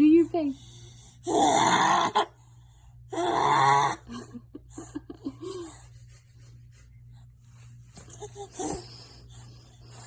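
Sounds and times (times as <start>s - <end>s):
child making raspy groan: 1.3s - 2.3s, 3.2s - 4.0s.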